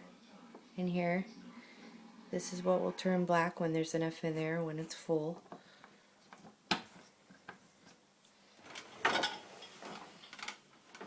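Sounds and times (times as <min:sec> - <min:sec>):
dishwasher parts rattling and sliding: 0:08.6 - 0:11.0.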